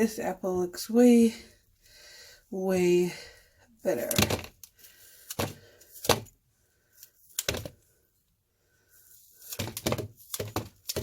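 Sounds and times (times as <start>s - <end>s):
knocks and clicks handling apple: 5.3s - 6.4s, 7.3s - 7.8s, 9.4s - 11.0s.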